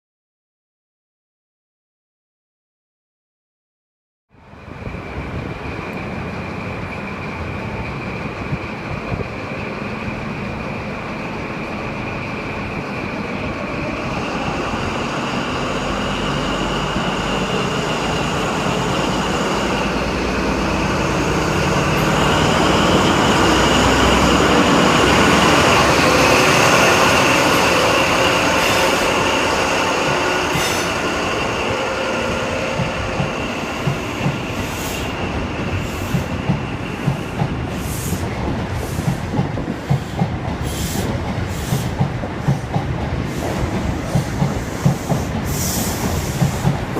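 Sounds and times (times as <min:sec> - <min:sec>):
diesel train high whine: 0:04.3 - 0:46.9.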